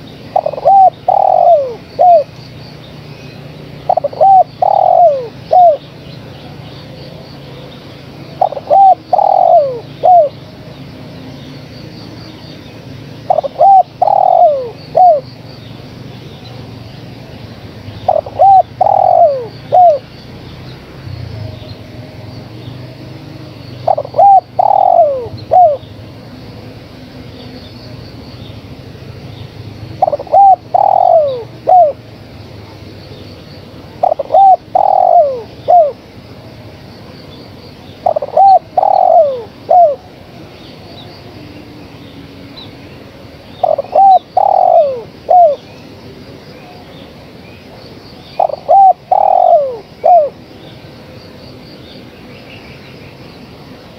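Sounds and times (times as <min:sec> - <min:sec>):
faint steady hum: 0:00.0 - 0:53.9
dove cooing: 0:00.3 - 0:02.3, 0:03.8 - 0:05.8, 0:08.4 - 0:10.4, 0:13.3 - 0:15.3, 0:18.0 - 0:20.1, 0:23.8 - 0:25.9, 0:30.0 - 0:32.0, 0:34.0 - 0:36.0, 0:38.0 - 0:40.1, 0:43.6 - 0:45.6, 0:48.4 - 0:50.4.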